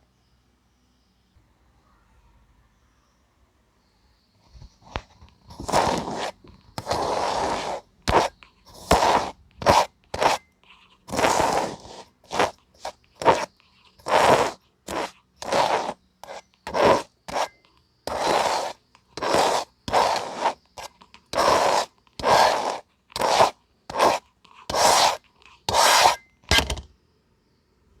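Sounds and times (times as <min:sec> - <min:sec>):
kinetic sand being cut and scraped: 0:05.5 - 0:26.3.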